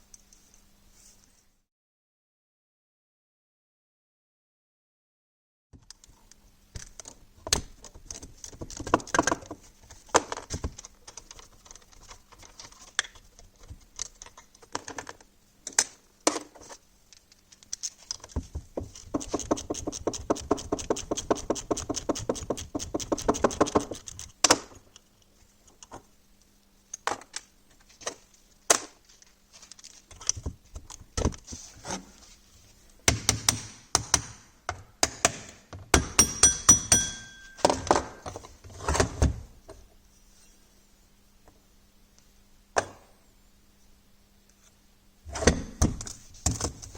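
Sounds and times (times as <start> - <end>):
rapid even clicking: 18.2 - 24.5.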